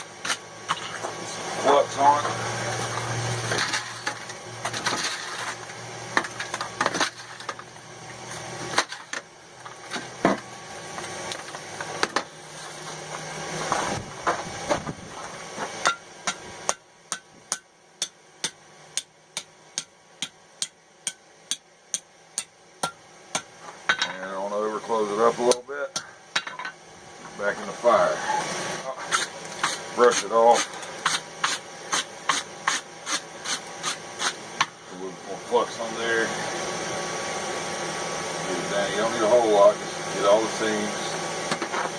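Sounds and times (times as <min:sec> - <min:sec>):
hammer ringing on hot steel: 0:15.8 - 0:23.5.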